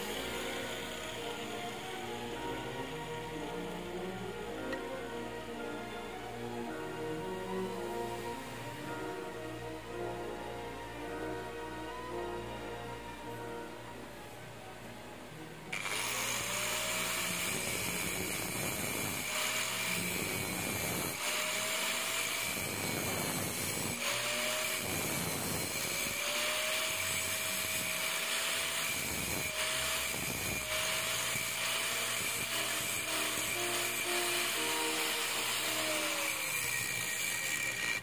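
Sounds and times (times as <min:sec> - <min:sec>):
power tool motor whining: 0:00.0 - 0:05.6, 0:15.7 - 0:38.0
background music: 0:00.0 - 0:38.0.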